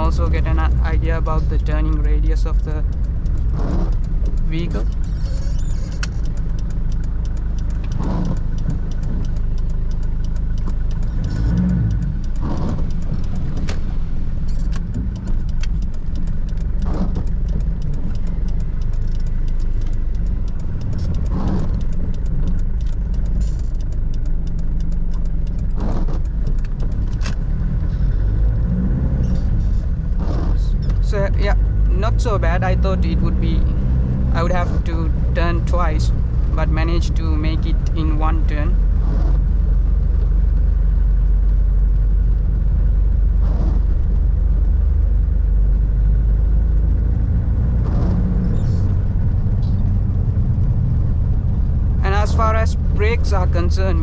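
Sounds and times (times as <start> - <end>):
diesel engine low rumble: 0.0 - 54.0.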